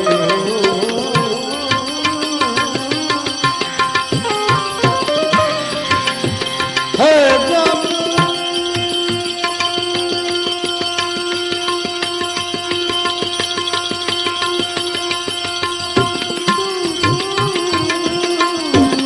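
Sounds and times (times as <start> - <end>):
long held instrumental note: 0.0 - 3.3, 4.2 - 12.2
fast percussion beat: 0.0 - 19.0.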